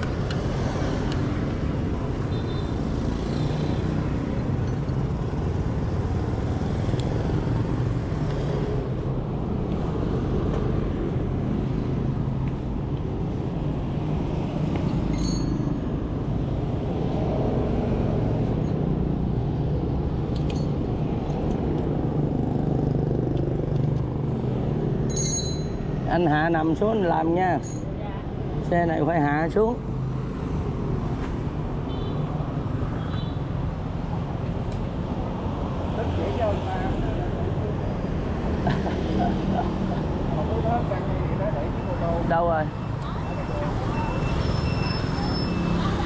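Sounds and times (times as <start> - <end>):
traffic rumble of motorbikes and cars: 0.0 - 46.0
metallic clink: 15.1 - 15.9, 20.5 - 20.8, 25.1 - 25.9, 27.6 - 27.9.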